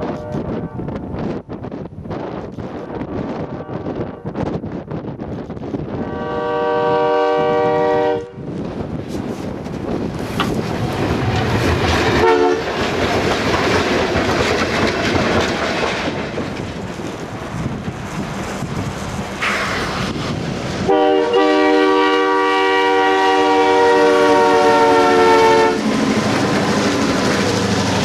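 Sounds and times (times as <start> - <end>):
locomotive horn blast: 0.0 - 0.9, 6.0 - 8.4, 12.2 - 12.6, 20.8 - 25.8
locomotive engines and wheels rumbling: 0.0 - 28.0.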